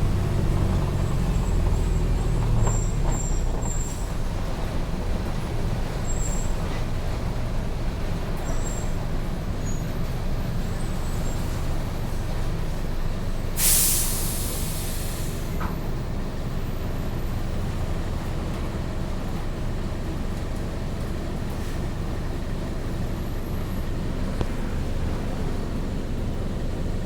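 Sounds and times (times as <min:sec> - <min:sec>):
bus engine rumbling: 0:00.0 - 0:27.0
air brake hiss: 0:13.6 - 0:15.8.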